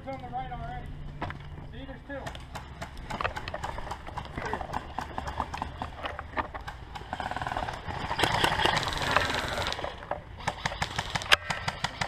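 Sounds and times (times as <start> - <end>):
scattered clicks: 2.2 - 12.0
airsoft gun full-auto bursts: 2.5 - 6.0, 6.6 - 12.0.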